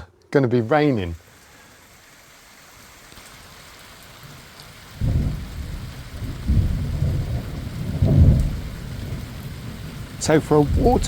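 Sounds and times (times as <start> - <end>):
rain hissing: 0.0 - 11.0
low rolling thunder: 4.9 - 11.0.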